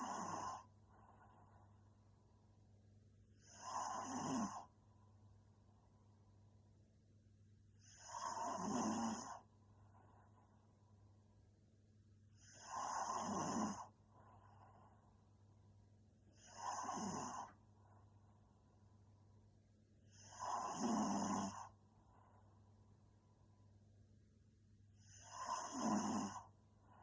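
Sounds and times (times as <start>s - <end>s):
woman snoring: 0.0s - 0.7s, 3.4s - 4.7s, 7.8s - 9.4s, 12.4s - 13.9s, 16.3s - 17.6s, 20.1s - 21.8s, 25.0s - 26.5s
quiet breathing: 0.0s - 6.7s, 7.6s - 23.8s, 24.9s - 27.0s.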